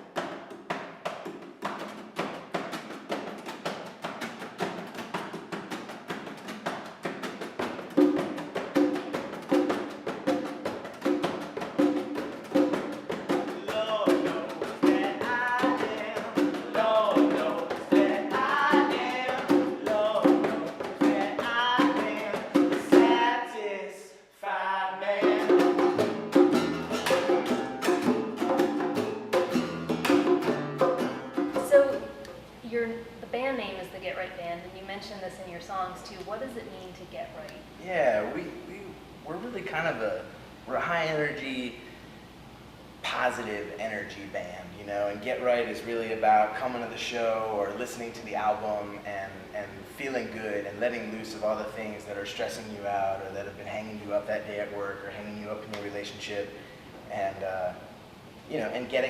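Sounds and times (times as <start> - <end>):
hand percussion: 0.0 - 23.4, 25.2 - 32.4
person singing: 13.5 - 25.9.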